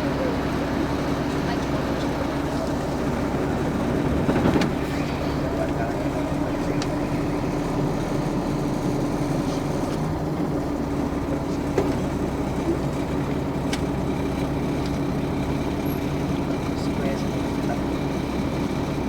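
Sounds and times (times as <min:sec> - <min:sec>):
diesel bus engine running: 0:00.0 - 0:19.0.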